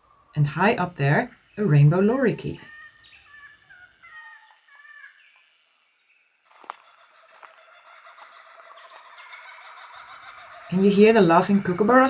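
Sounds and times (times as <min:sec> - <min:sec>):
distant bird calls: 0:00.0 - 0:12.0
bird whistling song: 0:02.6 - 0:05.5.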